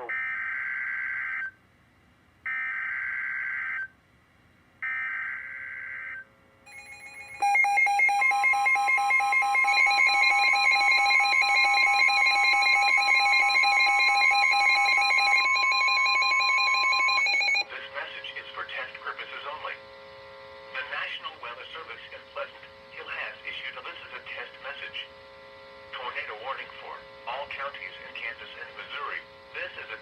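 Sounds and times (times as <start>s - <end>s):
fast pulsing alarm: 6.7s - 17.6s
screeching digital data tones: 6.7s - 17.6s
steady alert tone: 6.7s - 17.6s.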